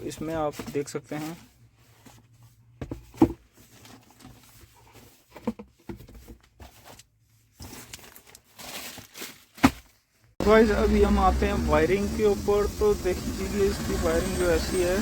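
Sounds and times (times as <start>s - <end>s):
rustling: 0.0s - 10.3s.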